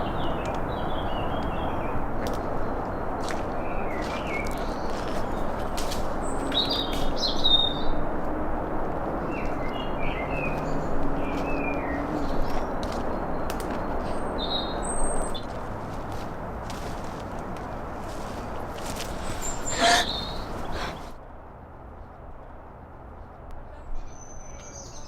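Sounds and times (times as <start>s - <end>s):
small birds chirping: 0.0s - 8.0s, 9.3s - 21.2s, 23.7s - 25.0s.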